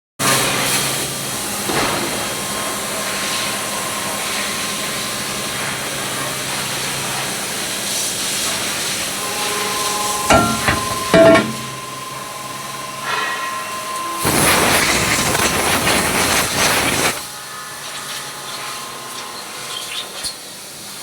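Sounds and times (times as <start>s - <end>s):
machine running with hiss: 0.2s - 21.0s
faint high whine: 1.0s - 19.7s
low hum: 9.2s - 14.2s.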